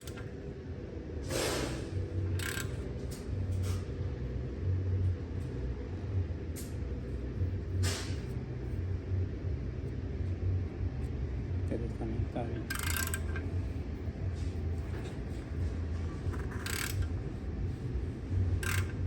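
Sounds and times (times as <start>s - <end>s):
short hisses: 1.3s - 1.9s.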